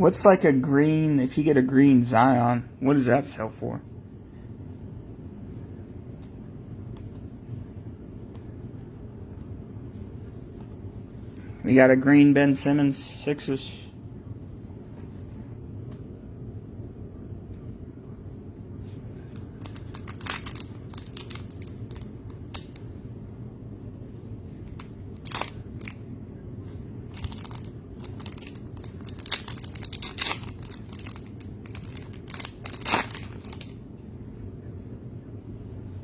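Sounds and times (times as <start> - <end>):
steady low hum: 0.0 - 36.0
card pack wrappers crinkling: 19.2 - 23.0, 24.6 - 26.0, 26.6 - 33.8.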